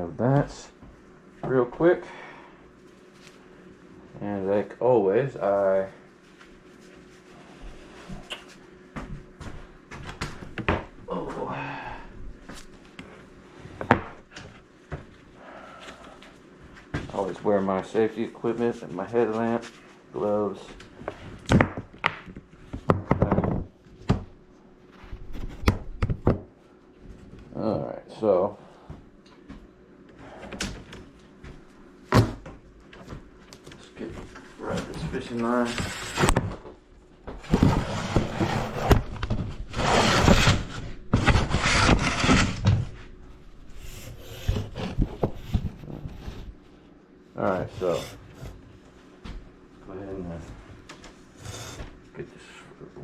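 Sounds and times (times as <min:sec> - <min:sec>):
rustling and scraping: 0:37.3 - 0:49.2.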